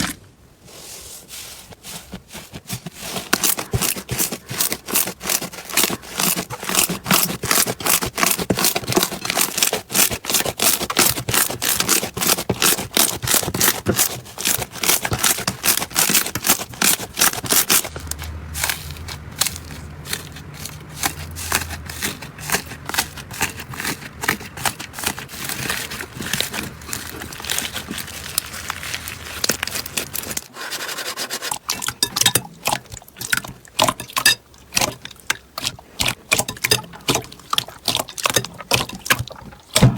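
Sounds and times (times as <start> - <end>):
slime crackling and popping: 3.8 - 30.4.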